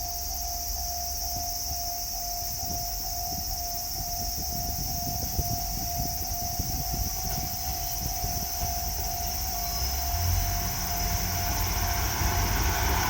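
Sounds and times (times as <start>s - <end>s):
level crossing warning bell: 0.0s - 13.0s
steady high hiss: 0.0s - 13.0s
rough low rumble: 4.2s - 13.0s.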